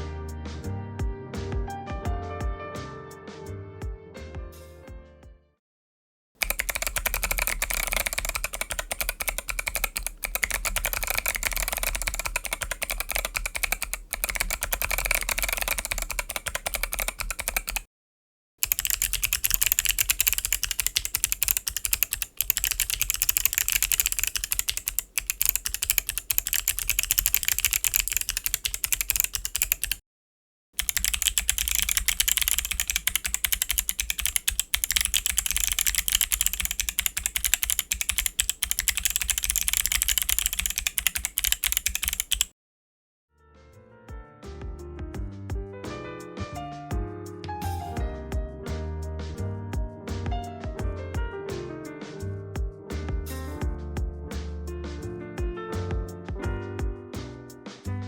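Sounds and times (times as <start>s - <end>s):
clicky mechanical keyboard typing: 6.4s - 17.9s, 18.6s - 30.0s, 30.8s - 42.5s.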